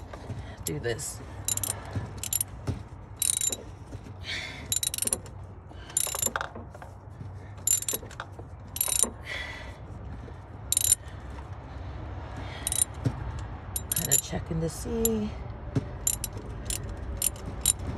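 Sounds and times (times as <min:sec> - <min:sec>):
ratchet wrench clicking: 0:01.5 - 0:02.5, 0:03.2 - 0:03.7, 0:04.6 - 0:05.3, 0:06.0 - 0:06.5, 0:07.6 - 0:08.2, 0:08.8 - 0:09.1, 0:10.7 - 0:11.0, 0:12.6 - 0:13.0, 0:13.7 - 0:14.2, 0:16.0 - 0:17.9.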